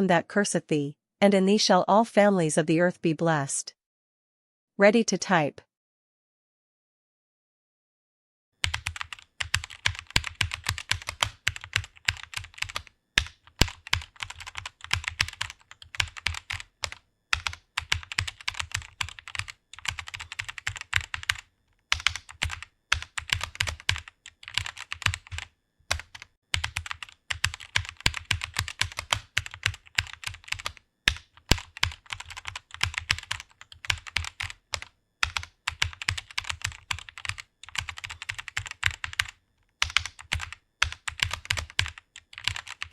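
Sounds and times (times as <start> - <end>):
keyboard typing: 8.6 - 42.9.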